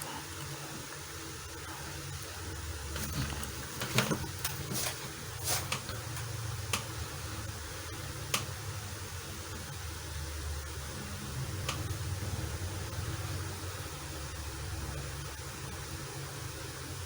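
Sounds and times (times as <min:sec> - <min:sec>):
steady low hum: 0:00.0 - 0:17.0
packaging clicks and rustles: 0:03.0 - 0:06.0.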